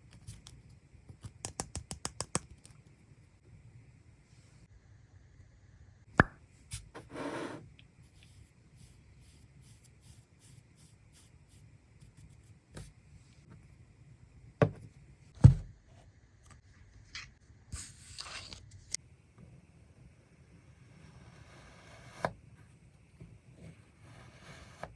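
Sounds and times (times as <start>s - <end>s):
dull thumps: 15.4s - 15.8s.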